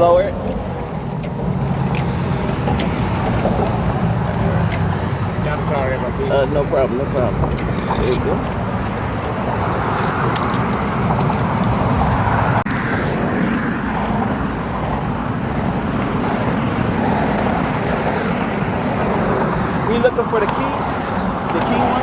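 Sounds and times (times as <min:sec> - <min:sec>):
highway traffic rushing: 0:00.0 - 0:22.0.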